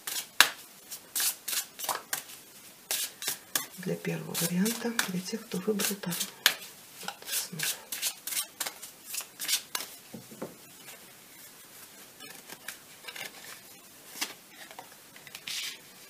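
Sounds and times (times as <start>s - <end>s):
cards being shuffled: 0.0s - 3.7s, 4.3s - 10.0s, 12.4s - 15.9s.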